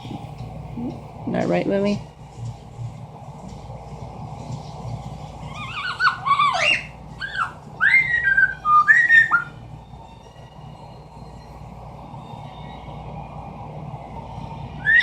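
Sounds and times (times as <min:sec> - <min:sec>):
parrot whistling: 0:05.5 - 0:11.5, 0:14.8 - 0:15.0.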